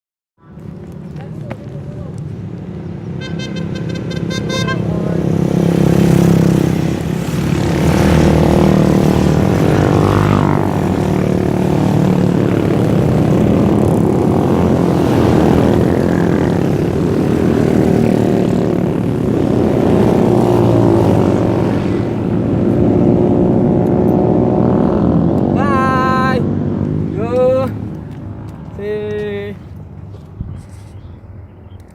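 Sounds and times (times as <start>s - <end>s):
motorcycle engine running: 4.5s - 26.5s.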